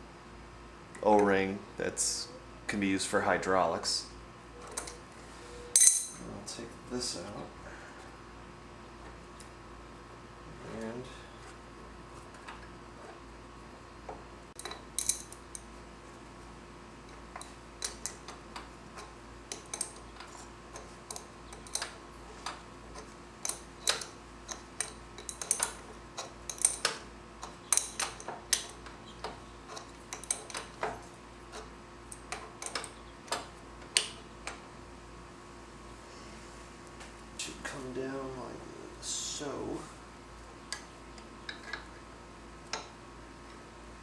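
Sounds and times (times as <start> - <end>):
faint steady hum: 0.0 - 44.0
hand tools clicking and tapping: 5.8 - 6.2, 14.6 - 15.7, 17.3 - 34.6.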